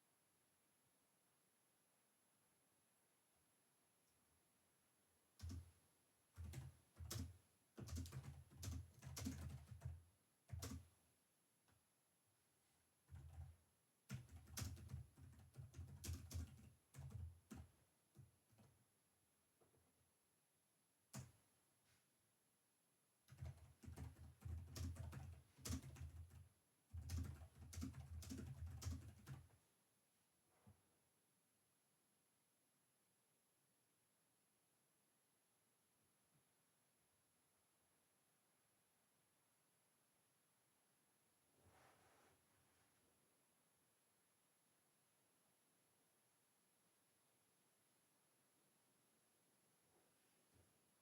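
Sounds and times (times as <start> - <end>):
typing on a computer keyboard: 5.4 - 5.8, 6.4 - 10.9, 13.1 - 18.8, 21.1 - 21.4, 23.3 - 29.6.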